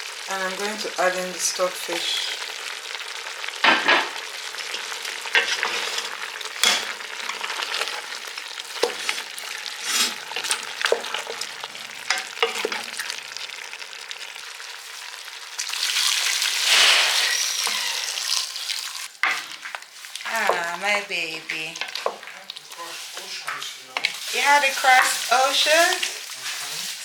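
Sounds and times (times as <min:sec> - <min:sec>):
meat sizzling in a pot: 0:00.0 - 0:27.0.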